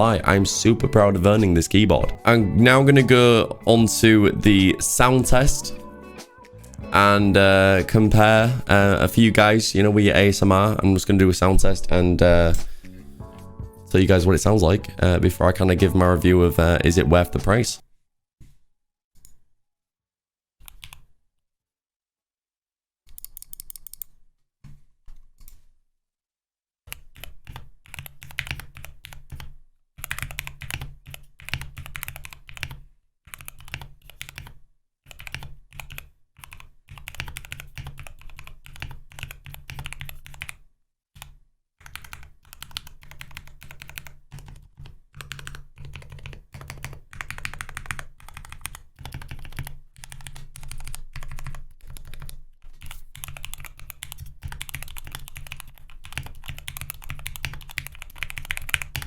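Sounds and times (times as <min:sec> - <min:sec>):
mechanical keyboard typing: 0:23.1 - 0:24.1, 0:26.9 - 0:40.6, 0:41.2 - 0:59.0.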